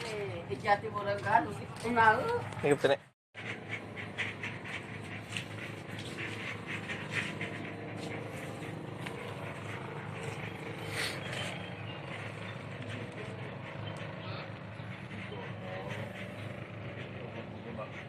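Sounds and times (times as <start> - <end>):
motor running: 0.7 - 18.0.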